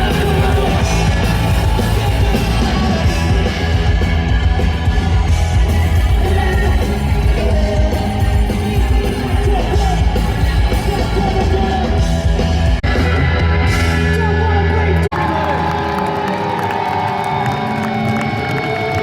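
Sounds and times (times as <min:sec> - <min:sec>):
person yelling singing: 0:00.0 - 0:12.2
live rock band playing: 0:00.0 - 0:16.3.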